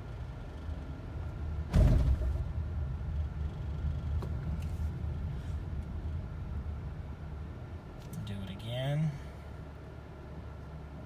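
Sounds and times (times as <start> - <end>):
van low rumble: 0.0 - 11.0.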